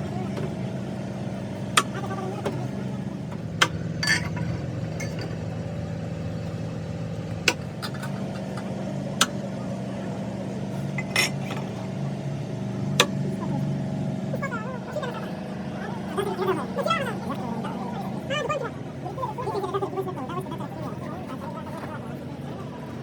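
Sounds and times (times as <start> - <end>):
metal tools clinking: 4.0 - 5.4, 11.0 - 11.6.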